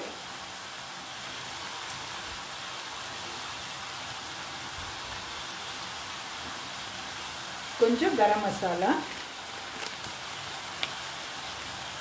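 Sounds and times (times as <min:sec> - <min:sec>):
chicken sizzling in hot oil: 0:00.0 - 0:12.0.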